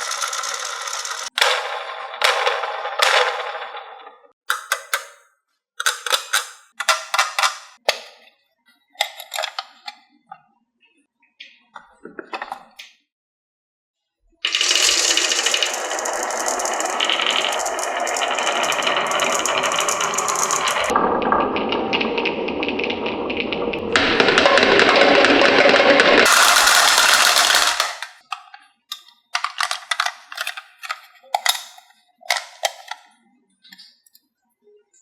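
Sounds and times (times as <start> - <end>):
marbles clattering on wooden track: 0.0 - 5.2, 14.5 - 21.0, 22.8 - 28.2, 29.4 - 32.9.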